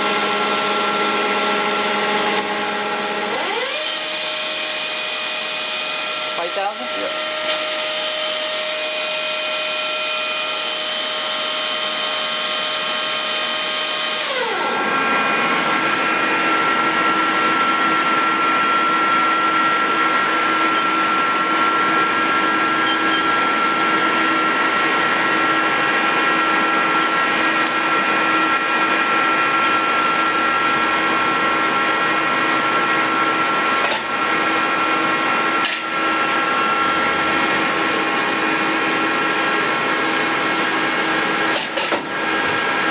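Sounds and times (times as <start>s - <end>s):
lathe machine whine and hiss: 0.0s - 42.9s.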